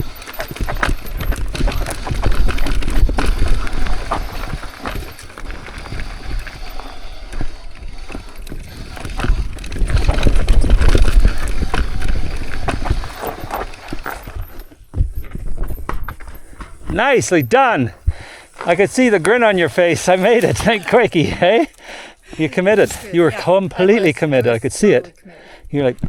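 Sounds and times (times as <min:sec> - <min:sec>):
wind noise on microphone: 0:00.0 - 0:17.1
bike clattering over rock: 0:00.0 - 0:24.9.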